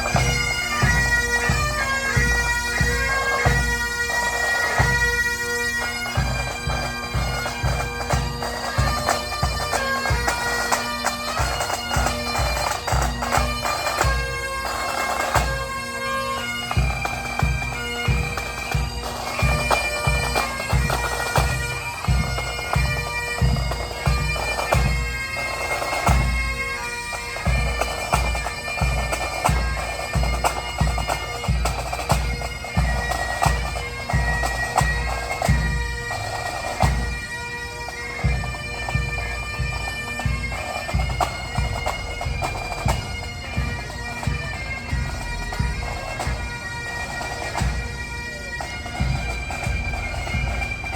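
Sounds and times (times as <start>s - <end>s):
bagpipes playing a march: 0.0s - 50.9s.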